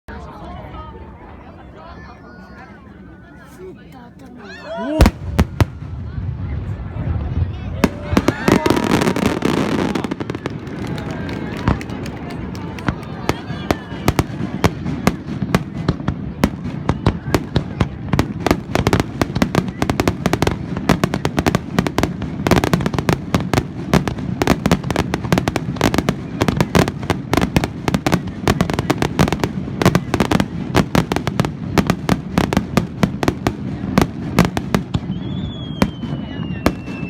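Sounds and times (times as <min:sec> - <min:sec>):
fireworks bangs and crackles: 0:04.9 - 0:37.0.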